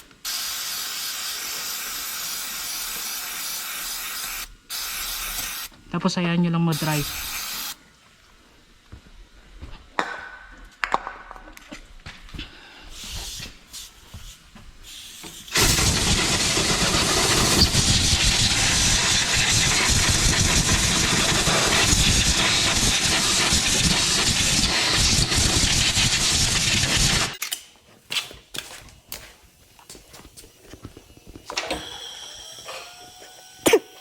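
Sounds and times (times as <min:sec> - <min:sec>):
loud hissing jet: 0:00.2 - 0:05.7, 0:06.6 - 0:07.8, 0:12.9 - 0:27.4.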